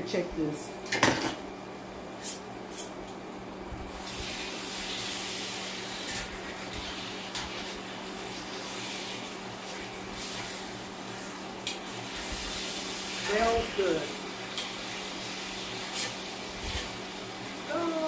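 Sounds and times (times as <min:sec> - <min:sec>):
food sizzling in a pan: 0:03.9 - 0:18.0.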